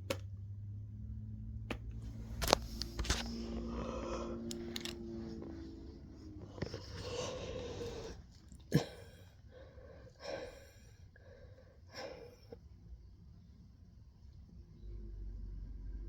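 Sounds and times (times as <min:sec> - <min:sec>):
short breaths: 0:02.1 - 0:08.4.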